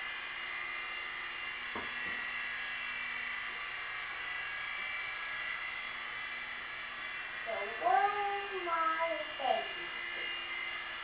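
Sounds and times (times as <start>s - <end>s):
micro helicopter rotors whining: 4.4s - 11.0s.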